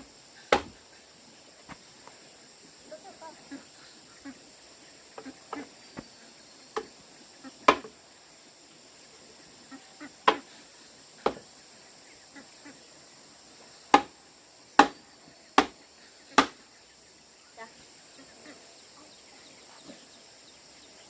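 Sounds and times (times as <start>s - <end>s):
sharp knocks: 0.5s - 0.8s.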